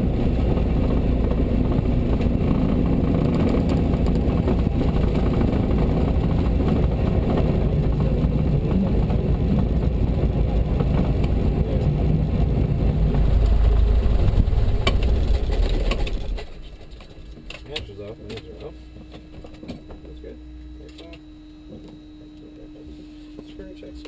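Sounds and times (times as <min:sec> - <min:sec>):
small plane piston engine running: 0:00.0 - 0:24.0.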